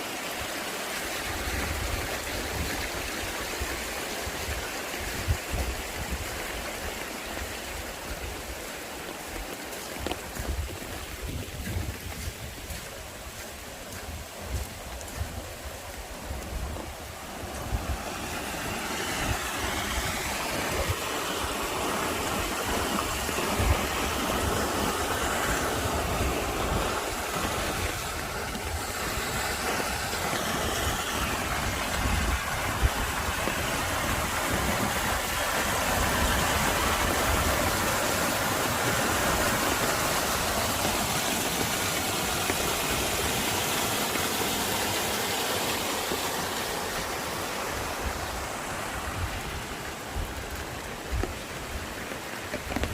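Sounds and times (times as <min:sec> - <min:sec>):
mountain stream rushing: 0:00.0 - 0:52.9
wind buffeting microphone: 0:10.0 - 0:41.8.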